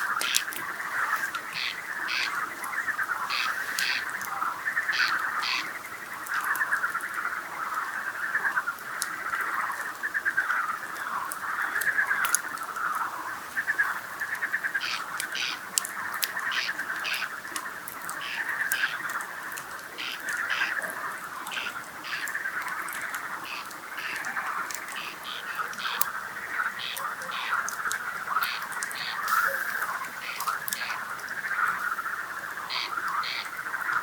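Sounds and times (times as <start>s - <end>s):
frogs croaking: 0.0s - 34.0s
campfire crackling: 8.8s - 34.0s.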